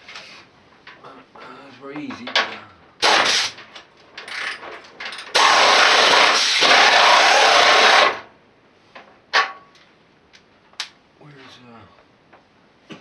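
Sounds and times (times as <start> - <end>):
air impact wrench running: 3.0 - 3.6, 5.3 - 8.2.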